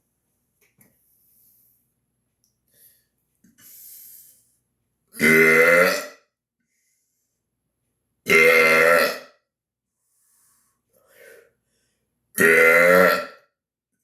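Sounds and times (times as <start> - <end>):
faint breathy sound: 2.7 - 4.7, 6.6 - 7.5, 9.9 - 12.1
man belching loudly: 5.2 - 6.2, 8.3 - 9.3, 12.4 - 13.4.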